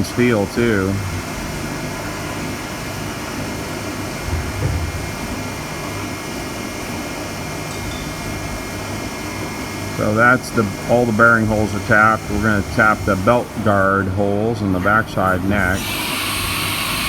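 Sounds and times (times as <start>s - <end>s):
milling machine humming and whining: 0.0s - 17.0s.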